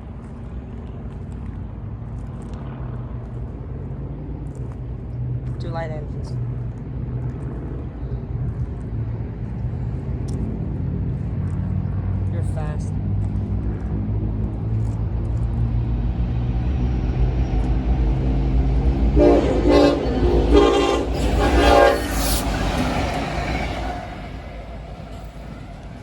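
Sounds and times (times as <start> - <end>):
diesel locomotive engine rumbling: 3.7 - 26.0
train air horn blasts: 19.0 - 24.4.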